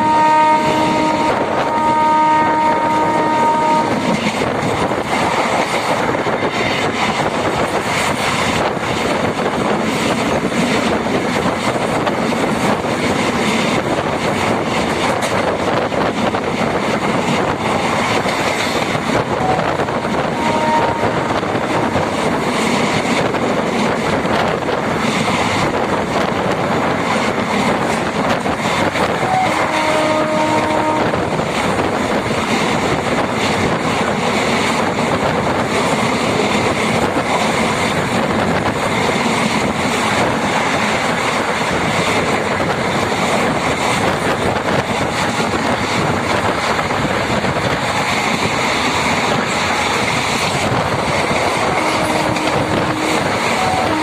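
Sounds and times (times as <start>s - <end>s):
train horn chord: 0.0s - 4.0s, 19.4s - 21.9s, 29.2s - 31.2s, 51.7s - 54.0s
train running along track: 0.0s - 54.0s.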